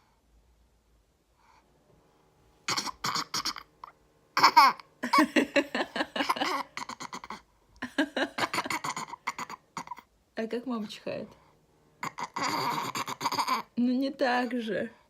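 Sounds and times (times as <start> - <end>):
child laughing: 4.4 - 9.5.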